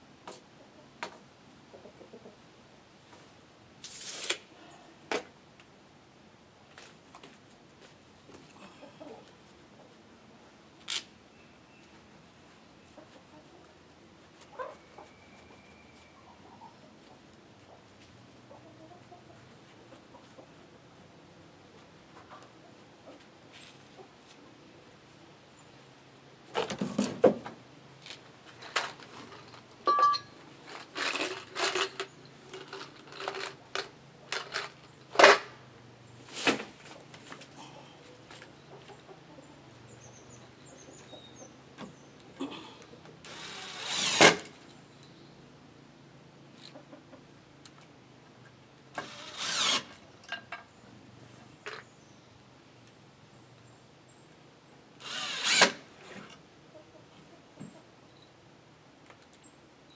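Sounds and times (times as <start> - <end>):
power drill bursts: 43.2 - 44.5, 49.0 - 49.9, 55.0 - 55.8.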